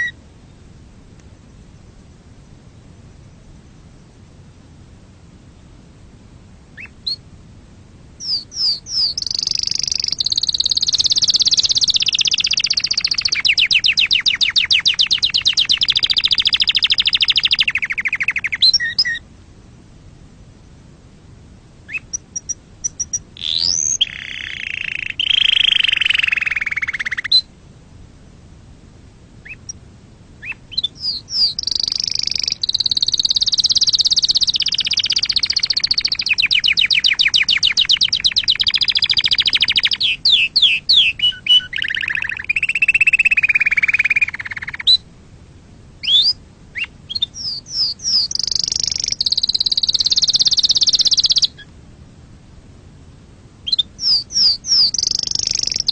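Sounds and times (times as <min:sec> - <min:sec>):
canary singing trills: 0:00.0 - 0:00.6, 0:06.7 - 0:07.3, 0:08.2 - 0:19.2, 0:21.9 - 0:27.5, 0:29.4 - 0:29.8, 0:30.4 - 0:45.1, 0:46.0 - 0:51.7, 0:53.6 - 0:55.9.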